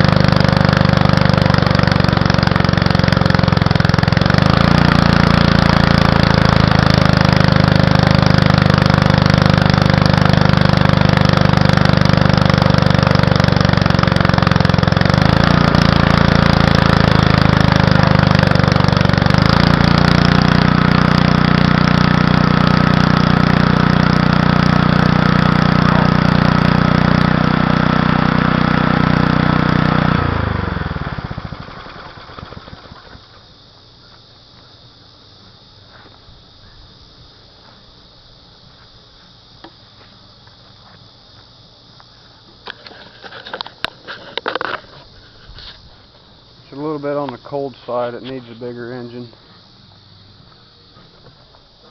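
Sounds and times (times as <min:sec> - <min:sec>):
engine winding down: 0:00.0 - 0:33.6
small gasoline engine running: 0:00.0 - 0:35.1.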